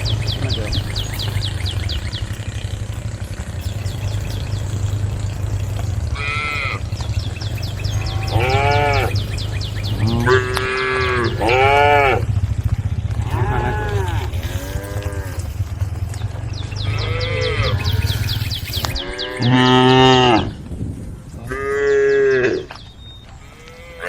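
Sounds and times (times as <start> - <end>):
low hum: 0.0 - 24.0
cattle mooing: 1.9 - 12.4, 13.1 - 15.9, 16.8 - 20.6, 21.4 - 22.7, 23.4 - 24.0.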